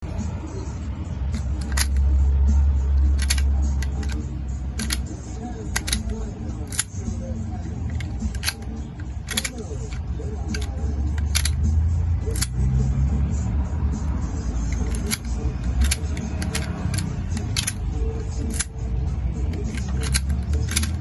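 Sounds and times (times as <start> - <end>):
sharp clicks: 4.8 - 7.0, 7.9 - 11.6, 19.5 - 21.0.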